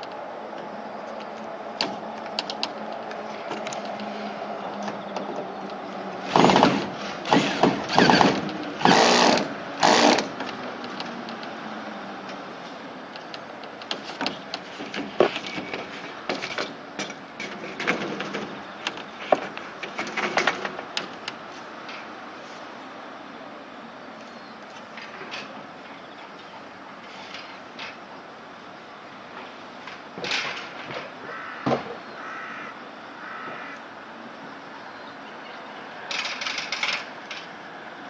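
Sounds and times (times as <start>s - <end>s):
loud scraping and rattling: 6.2s - 10.6s.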